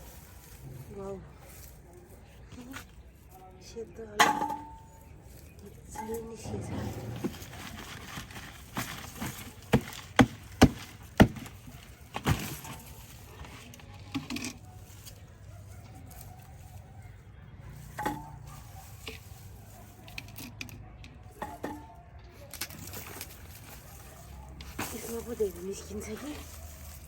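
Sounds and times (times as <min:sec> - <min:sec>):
digging tool chopping soil: 0:08.9 - 0:12.8.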